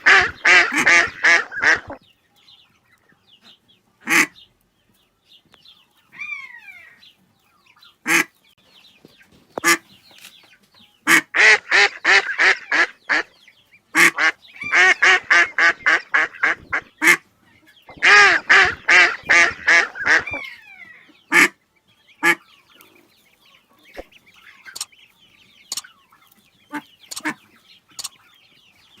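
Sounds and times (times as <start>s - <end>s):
ducks quacking: 0.0s - 2.0s, 3.4s - 4.5s, 7.7s - 8.5s, 9.6s - 10.0s, 11.0s - 29.0s.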